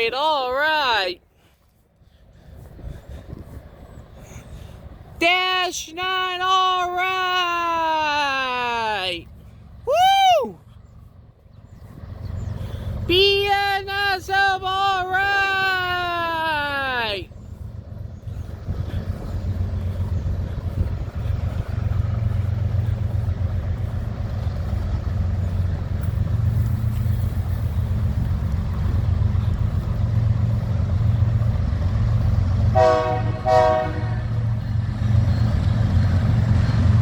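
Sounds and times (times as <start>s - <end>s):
diesel locomotives rumbling past: 0.0s - 37.0s
locomotive horn blasts: 32.7s - 34.5s.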